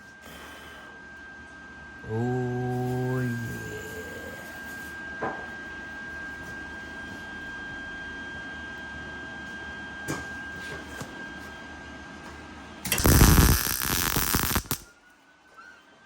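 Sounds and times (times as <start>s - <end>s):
steady high hum: 0.0s - 15.1s
welder arc crackle: 12.9s - 14.9s.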